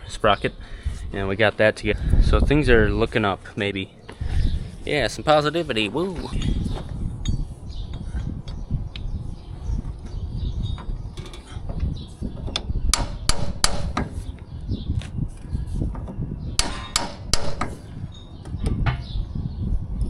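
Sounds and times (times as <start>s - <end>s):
hammer striking steel: 13.0s - 14.1s, 16.6s - 17.8s.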